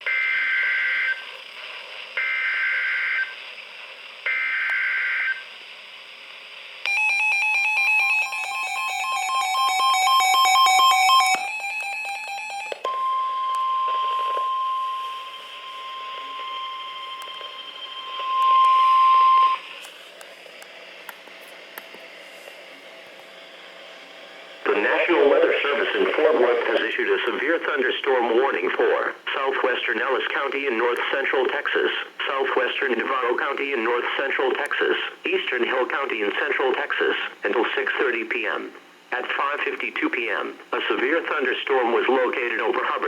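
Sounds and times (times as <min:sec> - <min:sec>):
steady warning tone: 0:06.8 - 0:19.8, 0:23.4 - 0:26.9
pulsing multi-tone alert: 0:06.9 - 0:19.7
screeching digital data bursts: 0:14.9 - 0:19.8.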